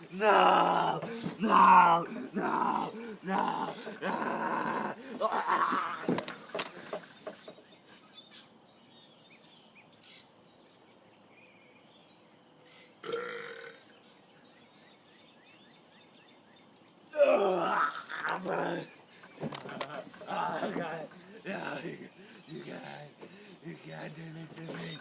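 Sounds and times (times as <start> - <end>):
harsh vocal burst: 0.0 - 6.1, 20.3 - 25.0
person burping: 13.0 - 13.9, 17.1 - 18.8.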